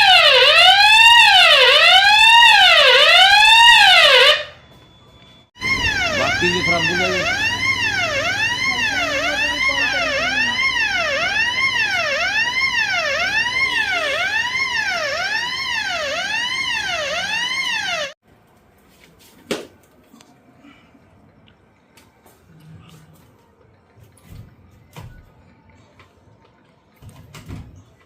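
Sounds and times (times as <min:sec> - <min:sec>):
security alarm siren wailing: 0:00.0 - 0:18.2.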